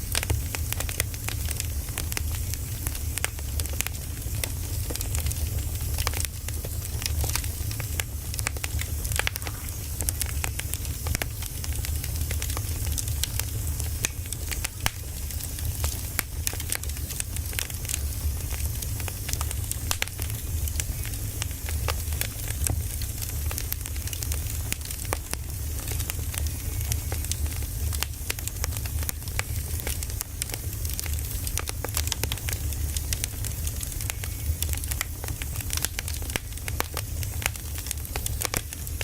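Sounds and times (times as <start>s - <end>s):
firewood crackling and popping: 0.0s - 39.0s.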